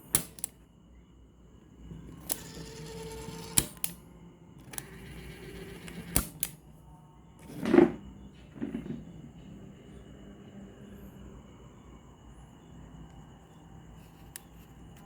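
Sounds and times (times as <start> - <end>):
sharp mechanical clicks: 0.0 - 0.6, 1.9 - 4.0, 4.6 - 6.6.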